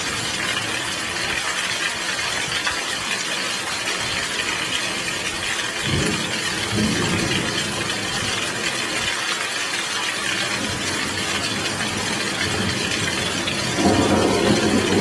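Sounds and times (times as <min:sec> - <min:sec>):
heavy rain: 0:00.0 - 0:15.0
thunder rumble: 0:10.5 - 0:15.0.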